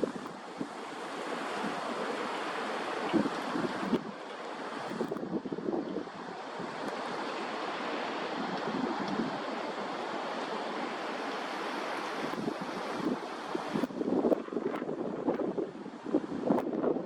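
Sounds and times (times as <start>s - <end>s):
strong wind buffeting microphone: 0.0s - 2.0s, 3.0s - 7.3s, 7.9s - 10.0s, 10.7s - 17.0s.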